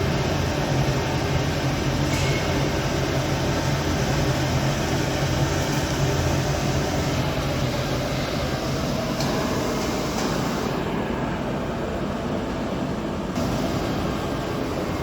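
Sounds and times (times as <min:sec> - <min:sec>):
machine running: 0:13.4 - 0:15.0.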